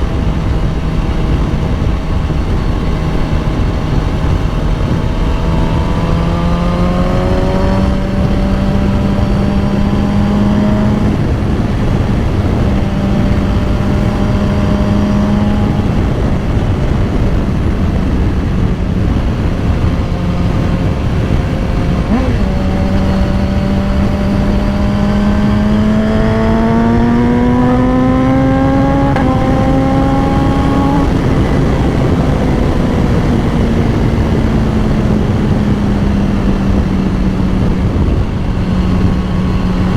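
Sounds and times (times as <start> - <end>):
heavy wind noise: 0.0 - 39.9
motorcycle engine revving: 0.0 - 39.9.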